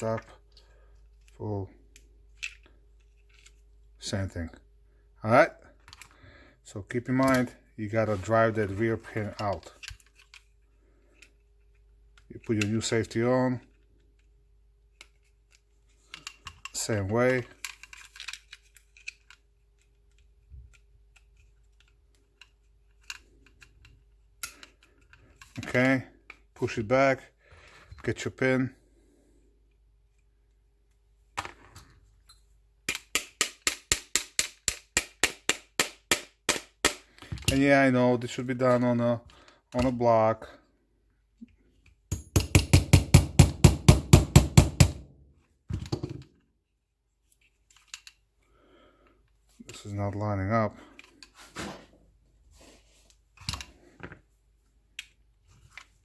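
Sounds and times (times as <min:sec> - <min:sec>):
hammer tapping pin punch: 0:42.1 - 0:45.0.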